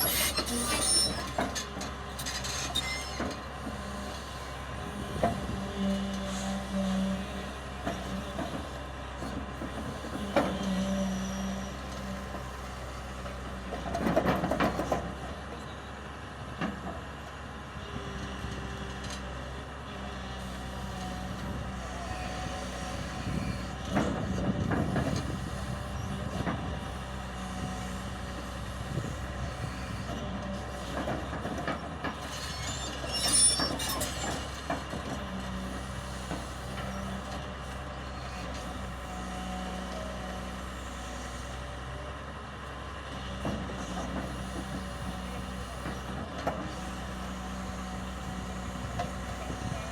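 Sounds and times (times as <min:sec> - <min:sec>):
high squeal: 0:00.0 - 0:01.4, 0:02.4 - 0:03.2, 0:32.4 - 0:34.4
excavator diesel engine: 0:00.0 - 0:49.9.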